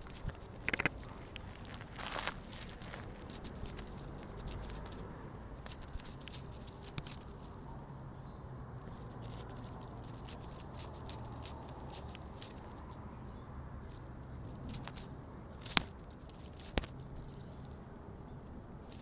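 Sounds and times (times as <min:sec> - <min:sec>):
steady low rumble: 0:00.0 - 0:13.3
light ticks and crackles: 0:02.8 - 0:07.8.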